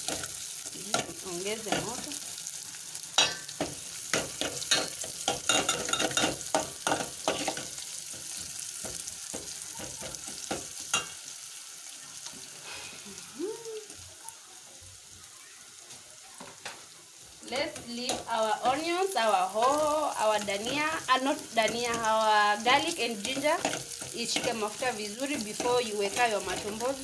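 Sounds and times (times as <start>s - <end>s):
spoon stirring and scraping: 0.0s - 2.3s, 3.2s - 11.2s, 17.5s - 27.0s
vegetables sizzling in oil: 0.0s - 27.0s.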